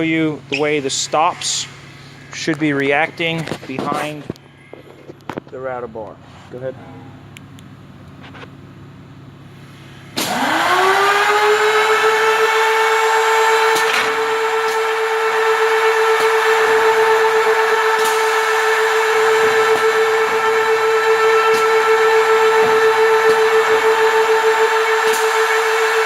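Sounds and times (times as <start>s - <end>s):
router motor whine: 10.0s - 26.0s.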